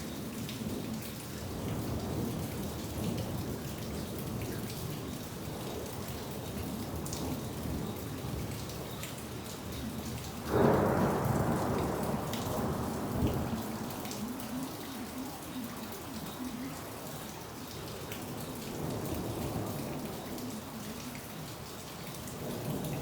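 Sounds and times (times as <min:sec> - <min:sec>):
steady rain falling: 0:00.0 - 0:23.0
thunderclap: 0:10.5 - 0:13.9.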